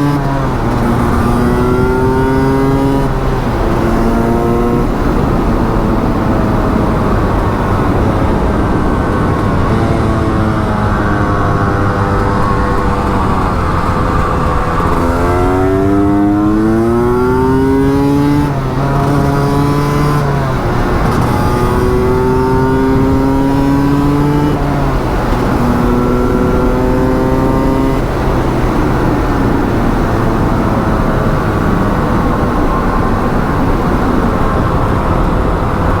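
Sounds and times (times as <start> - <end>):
two-stroke motorcycle engine accelerating: 0.0 - 36.0.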